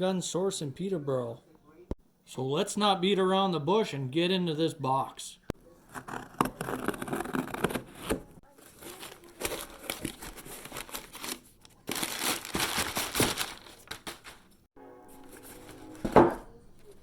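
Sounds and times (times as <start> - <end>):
packaging crinkling and tearing: 6.0 - 14.6.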